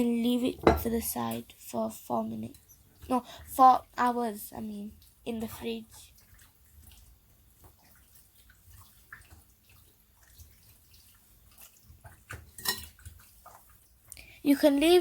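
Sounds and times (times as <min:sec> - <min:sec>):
wet squelches of raw chicken: 0:02.5 - 0:14.4.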